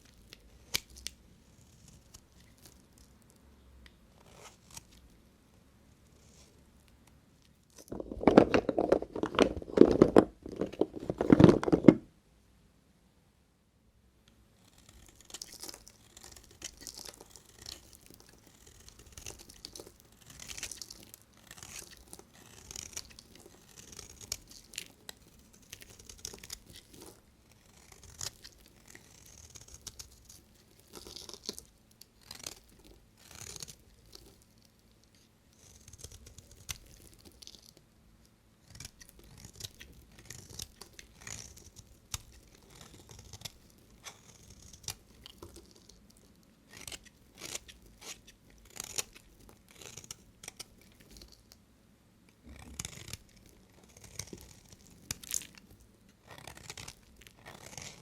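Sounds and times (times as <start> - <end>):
knife cutting dry soap: 14.7 - 34.5, 38.6 - 51.5, 52.5 - 58.0.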